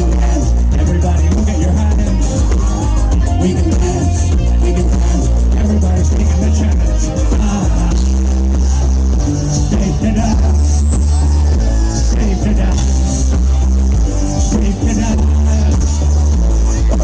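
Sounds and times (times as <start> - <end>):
distorted live synth-pop band: 0.0 - 17.0.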